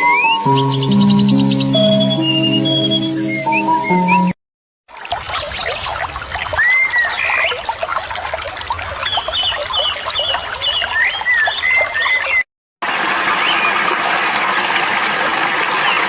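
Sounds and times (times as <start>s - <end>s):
birds chirping and whistling: 0.0s - 4.4s, 5.4s - 8.1s, 9.0s - 12.4s
water trickling: 4.9s - 16.0s.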